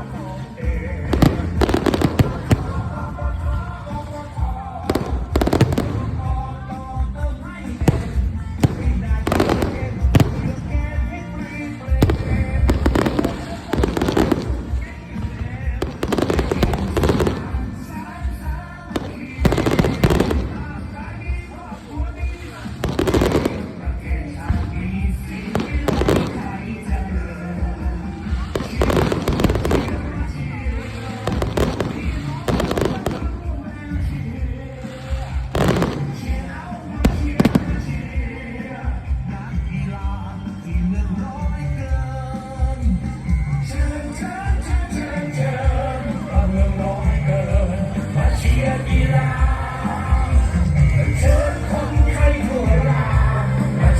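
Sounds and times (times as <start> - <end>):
background music: 0.0 - 53.9
fireworks launching and bursting: 0.1 - 40.6.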